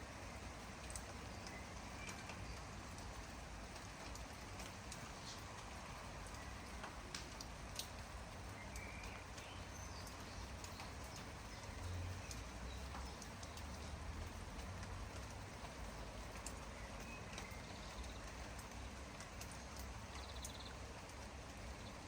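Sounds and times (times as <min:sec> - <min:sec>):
light rain: 0:00.0 - 0:22.0
raindrops tapping: 0:00.0 - 0:22.0
bird chirp: 0:08.5 - 0:13.9, 0:16.7 - 0:18.3, 0:19.4 - 0:20.8.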